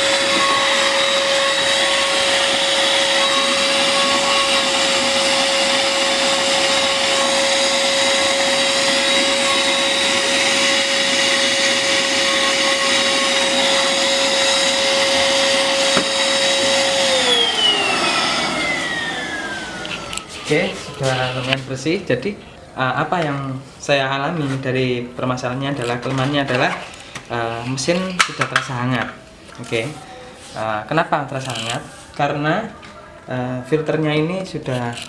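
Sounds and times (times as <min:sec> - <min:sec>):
vacuum cleaner whining: 0:00.0 - 0:22.0.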